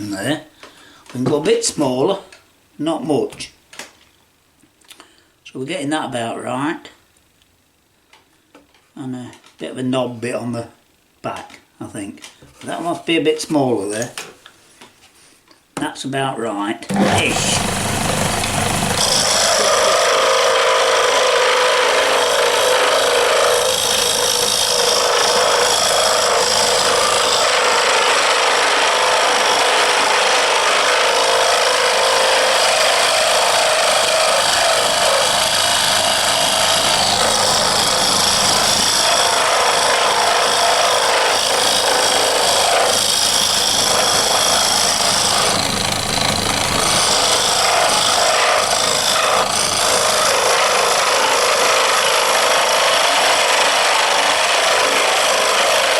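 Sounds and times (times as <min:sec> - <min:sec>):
cutting tool rasping on wood: 0:16.9 - 0:55.9
lathe motor hum: 0:16.9 - 0:55.9.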